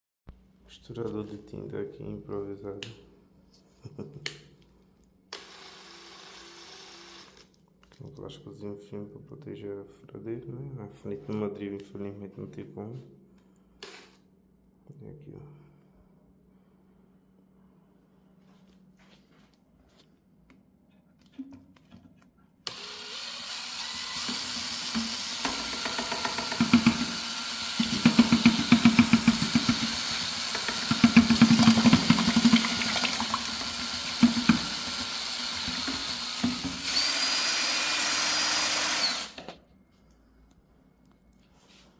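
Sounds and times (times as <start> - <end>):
drill spinning mixing paddle: 5.4 - 7.4, 22.7 - 39.5.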